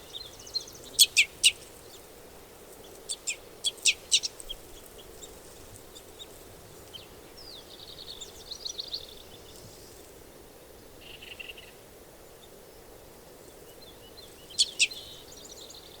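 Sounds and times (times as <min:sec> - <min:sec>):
faint background noise: 0:00.0 - 0:16.0
bird chirping and calling: 0:14.6 - 0:15.1.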